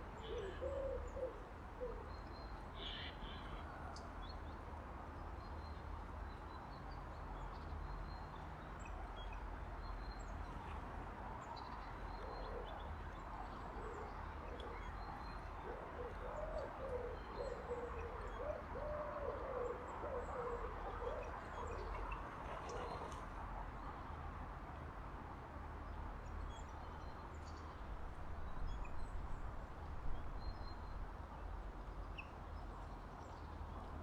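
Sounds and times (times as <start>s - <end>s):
pigeon cooing: 15.6s - 21.8s.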